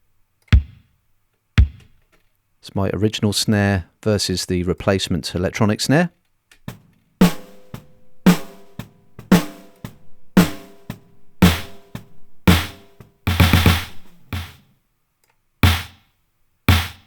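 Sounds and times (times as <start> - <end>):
acoustic snare drum beat: 0.6 - 0.8, 1.6 - 1.9, 6.7 - 14.6, 15.6 - 16.0, 16.7 - 17.0
drum machine snare: 0.6 - 0.9, 1.6 - 2.0, 6.7 - 14.6, 15.6 - 16.0, 16.7 - 17.0.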